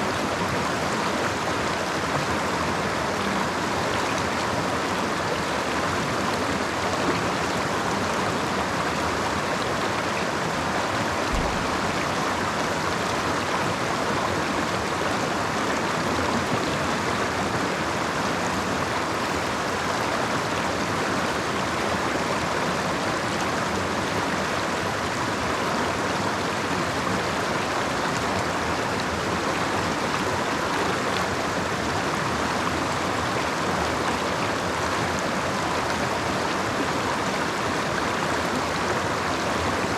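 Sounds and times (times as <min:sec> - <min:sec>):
creek water splashing over rocks: 0:00.0 - 0:39.9.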